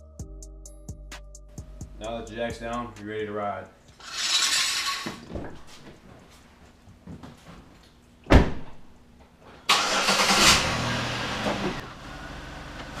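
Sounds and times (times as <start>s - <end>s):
car engine starting and idling: 9.7s - 13.0s.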